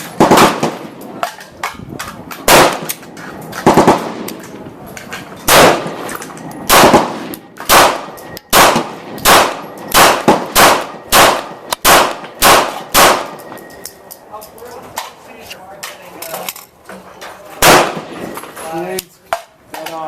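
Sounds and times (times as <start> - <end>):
pistol shots: 0.0 - 1.0, 2.3 - 4.6, 5.4 - 13.5, 17.6 - 18.4.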